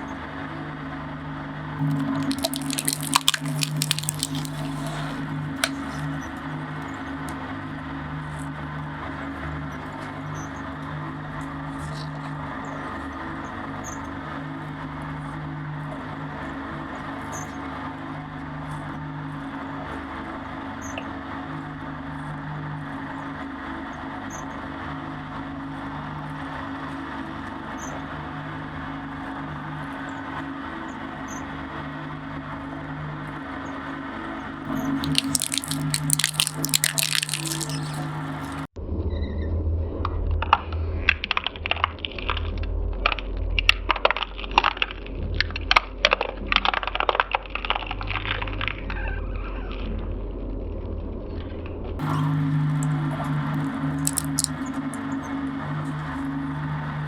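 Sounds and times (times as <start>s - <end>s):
plastic cracking and snapping: 1.9s - 5.0s, 35.0s - 38.6s, 54.1s - 54.5s.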